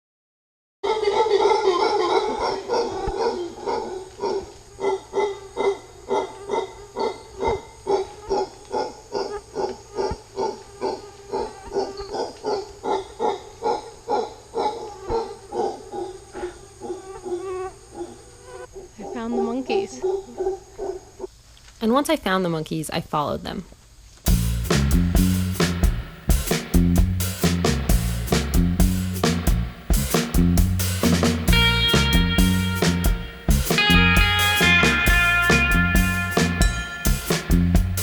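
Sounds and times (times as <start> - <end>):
howler monkeys howling: 0.8 - 21.3
rhythmic grunting pulses: 24.3 - 38.0.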